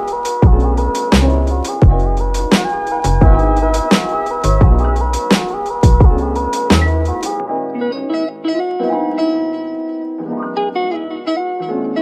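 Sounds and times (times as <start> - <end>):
electronic beat music: 0.0 - 7.5.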